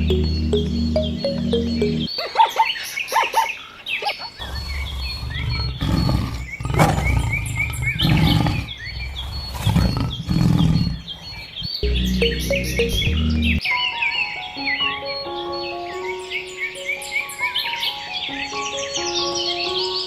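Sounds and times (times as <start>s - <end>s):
high bird chirping: 0.0s - 2.9s, 11.8s - 20.0s.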